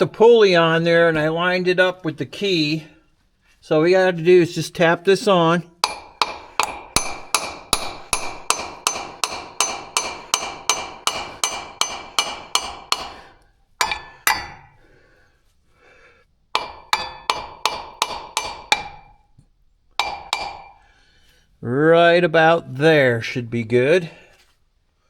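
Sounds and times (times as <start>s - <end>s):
hammer tapping on metal: 5.8s - 14.8s, 16.6s - 19.4s, 20.0s - 20.9s.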